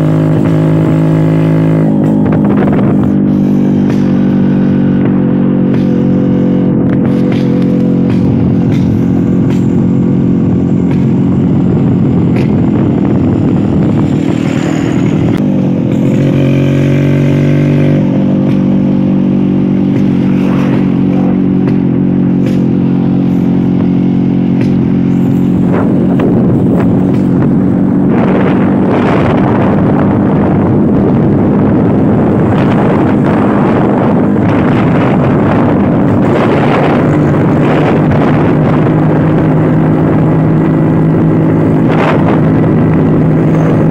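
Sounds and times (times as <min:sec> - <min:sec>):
scooter engine running: 0:00.0 - 0:43.9
wind and road noise: 0:00.0 - 0:43.9.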